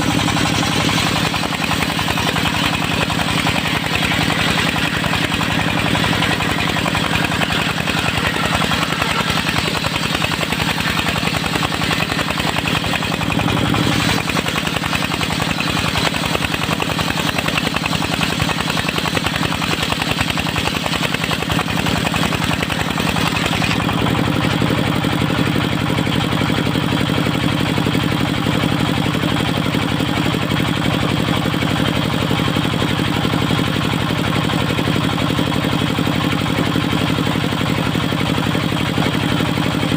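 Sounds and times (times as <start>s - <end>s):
sawmill engine running: 0.0s - 39.9s.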